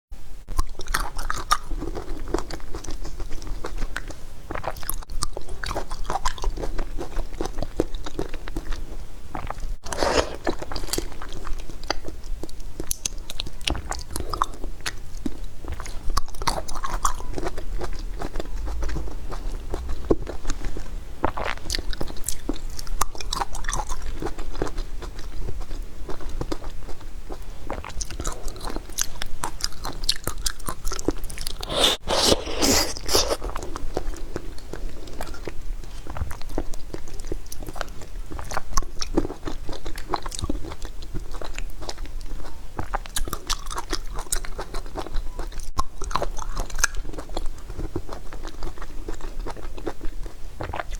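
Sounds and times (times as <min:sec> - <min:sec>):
person chewing crunchy food: 0:00.6 - 0:50.9.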